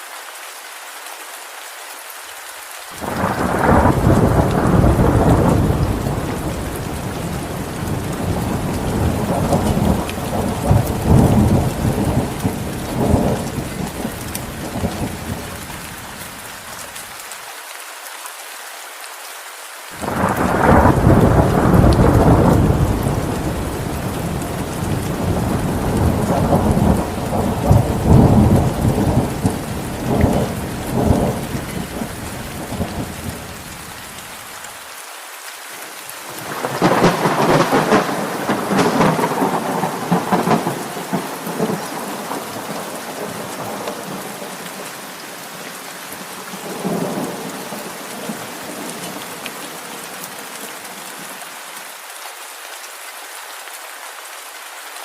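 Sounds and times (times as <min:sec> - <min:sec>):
steady rain hissing: 0:00.0 - 0:55.0
thunder rolling: 0:20.0 - 0:33.4, 0:36.4 - 0:44.2.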